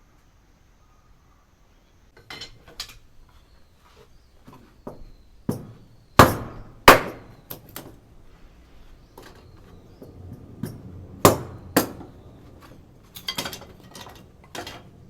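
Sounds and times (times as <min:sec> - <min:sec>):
firewood pieces knocking together: 0:04.5 - 0:08.0, 0:09.1 - 0:15.0.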